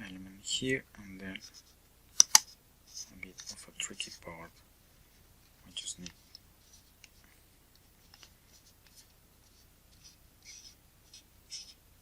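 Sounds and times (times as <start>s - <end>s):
metal lens parts clicking and scraping: 2.2s - 4.1s.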